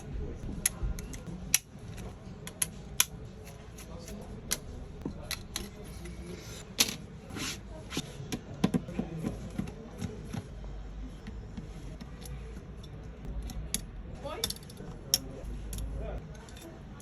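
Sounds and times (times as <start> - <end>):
small tools clicking and tapping: 11.2 - 16.8.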